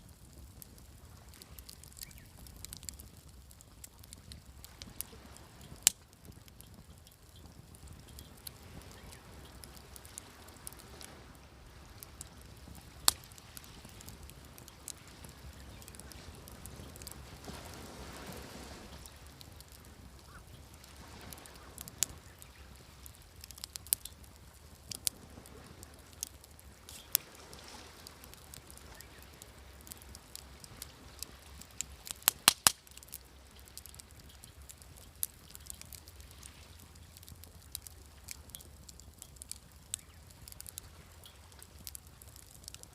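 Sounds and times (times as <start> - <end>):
campfire crackling and popping: 0.0 - 42.9
waves washing: 16.1 - 19.6.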